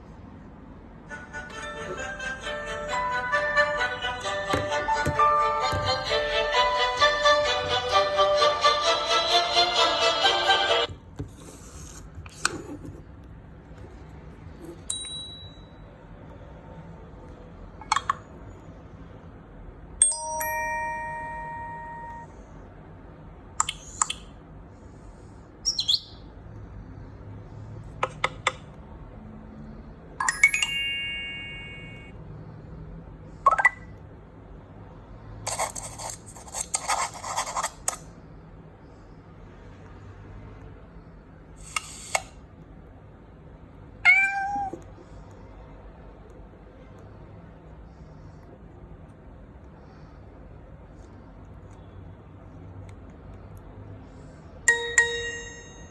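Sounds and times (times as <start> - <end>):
bell-like phone chime: 20.0 - 22.3, 30.2 - 32.2, 54.7 - 55.9.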